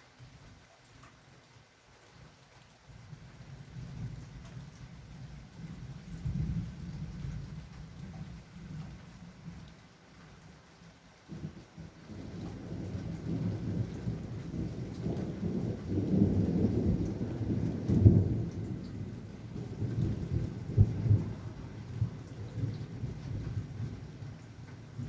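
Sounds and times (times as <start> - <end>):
steady rain: 0.0 - 25.0
thunder rolling: 11.3 - 25.0
thunder clap: 12.2 - 24.0.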